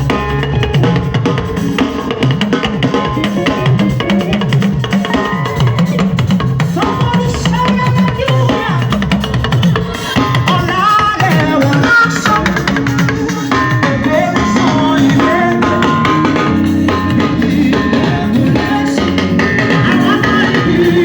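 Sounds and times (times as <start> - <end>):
bass line: 0.0 - 9.4, 10.4 - 21.0
drum kit beat: 0.0 - 21.0
gliding melody line: 11.3 - 21.0.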